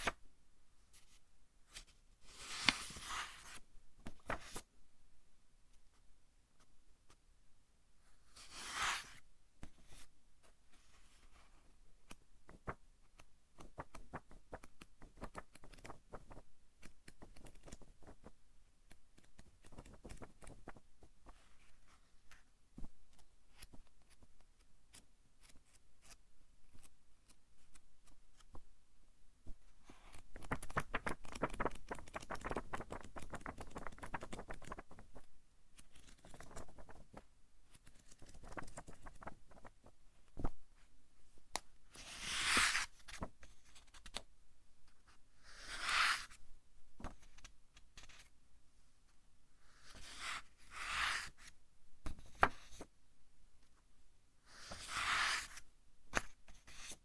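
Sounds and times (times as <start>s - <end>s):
book pages being turned: 2.3s - 3.6s, 8.5s - 9.2s, 19.2s - 20.8s, 30.1s - 35.1s, 35.8s - 37.2s, 37.8s - 39.8s, 42.0s - 44.2s, 45.6s - 46.4s, 54.6s - 55.6s.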